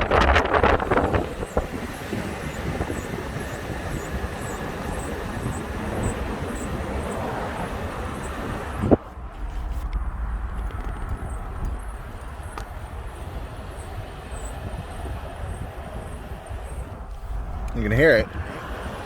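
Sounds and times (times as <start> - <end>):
road and tyre noise: 0.0 - 19.0.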